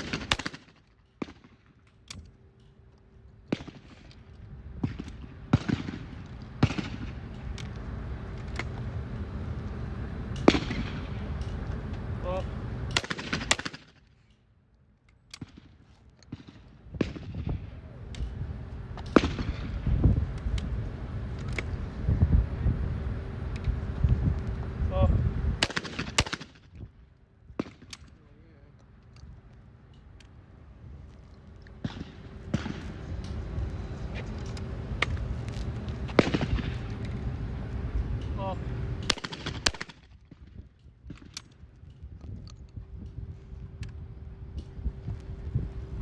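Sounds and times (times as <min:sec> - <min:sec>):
shotgun shots: 0:00.0 - 0:01.7, 0:04.8 - 0:07.2, 0:10.5 - 0:11.2, 0:12.9 - 0:14.0, 0:25.6 - 0:26.6, 0:31.8 - 0:33.0, 0:36.1 - 0:36.8, 0:39.0 - 0:40.2
steady low rumble: 0:00.0 - 0:46.0
low rumble: 0:15.4 - 0:28.7.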